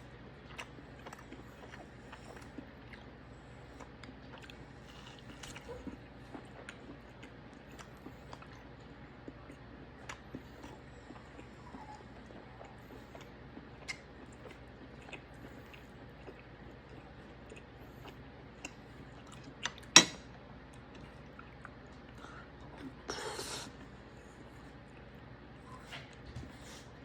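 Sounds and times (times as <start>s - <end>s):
person chewing: 0.3s - 23.9s.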